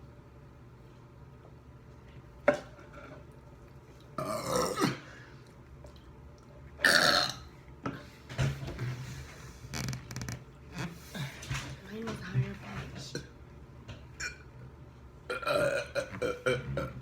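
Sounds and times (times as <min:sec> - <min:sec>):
people burping: 0:04.2 - 0:05.1, 0:15.3 - 0:17.0.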